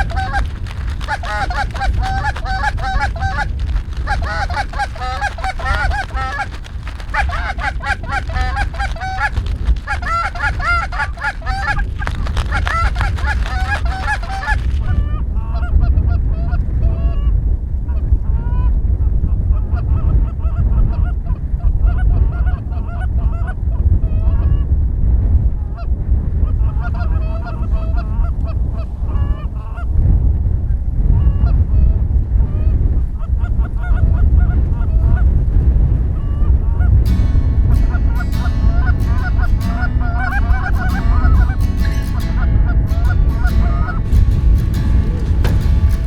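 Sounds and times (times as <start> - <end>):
geese honking: 0.0 - 14.9, 37.1 - 46.0
loud low rumble: 34.3 - 46.0.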